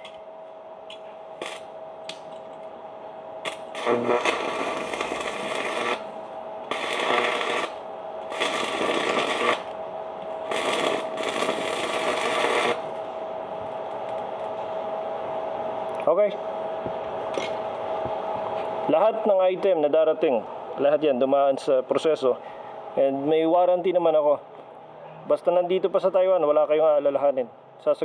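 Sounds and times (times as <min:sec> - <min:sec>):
steady hum: 0:00.0 - 0:28.0
welding arc crackling: 0:01.4 - 0:02.3, 0:03.4 - 0:13.2.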